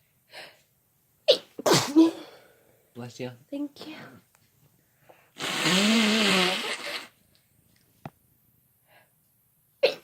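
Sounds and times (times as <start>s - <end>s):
person sneezing: 1.3s - 2.5s.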